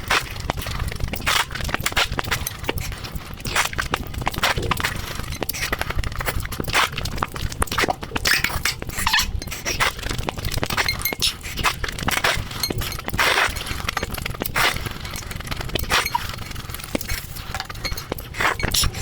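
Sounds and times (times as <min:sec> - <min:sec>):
slurping and chewing noodles: 0:00.0 - 0:19.0
mouth clicks: 0:15.8 - 0:17.2.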